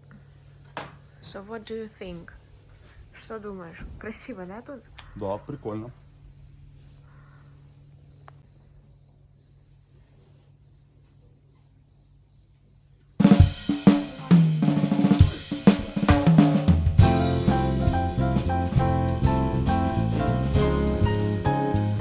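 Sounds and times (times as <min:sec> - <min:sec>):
crickets chirping: 0:00.0 - 0:13.5
band music with drum kit: 0:13.2 - 0:22.0.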